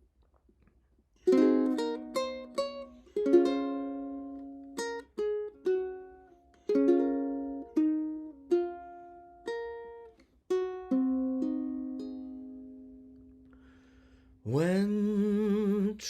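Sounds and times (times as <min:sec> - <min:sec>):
plucked string instrument: 0:01.2 - 0:13.8.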